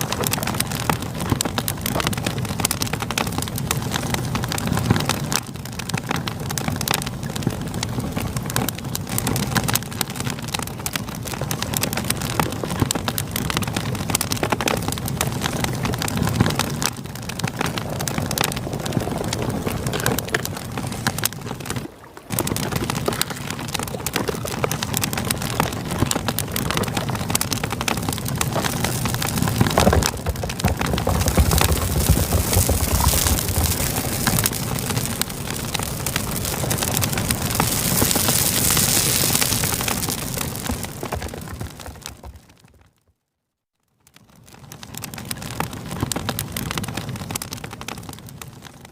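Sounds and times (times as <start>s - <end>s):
campfire crackling: 0.0s - 42.6s, 44.3s - 48.9s
heavy low rumble: 26.5s - 40.9s.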